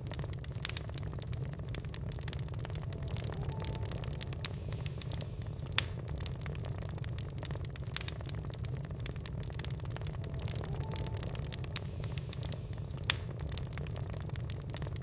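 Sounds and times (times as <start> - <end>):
fire popping loudly: 0.0 - 15.0
log fire crackling: 0.0 - 15.0.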